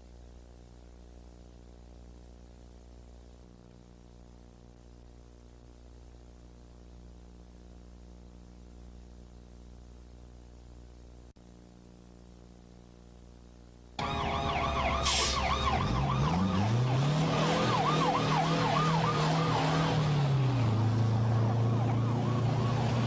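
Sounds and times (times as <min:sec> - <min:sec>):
deep rising and falling tone: 0:14.0 - 0:23.0
emergency sirens wailing: 0:14.0 - 0:23.0.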